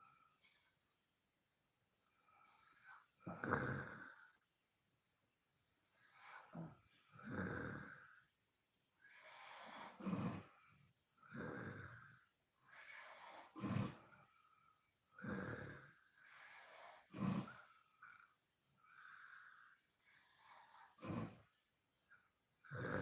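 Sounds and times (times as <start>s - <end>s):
woman snoring: 2.3s - 4.4s, 6.1s - 8.2s, 9.1s - 10.6s, 11.2s - 14.2s, 15.2s - 18.2s, 18.8s - 21.5s, 22.6s - 23.0s
breathy breaths: 9.0s - 21.5s.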